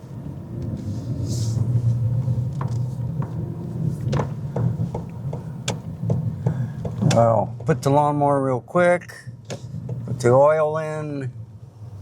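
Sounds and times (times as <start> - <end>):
car engine rumbling: 0.0 - 12.0
light knocks and clicks: 4.0 - 7.8.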